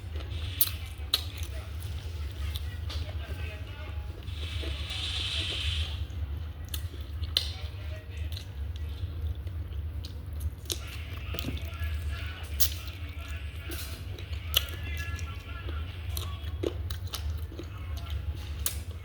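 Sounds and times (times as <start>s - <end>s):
chewing and eating: 0.0s - 19.0s
steady low hum: 0.0s - 19.0s
sharp clicks and snaps: 18.6s - 18.9s.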